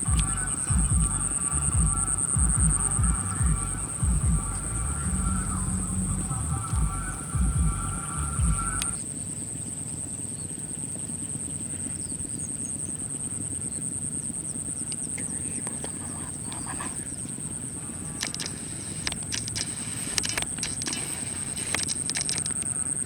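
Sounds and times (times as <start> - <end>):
high-pitched buzz: 0.0 - 9.0, 17.2 - 23.0
low rumble: 0.0 - 9.0
faint bird chirps: 0.0 - 23.0.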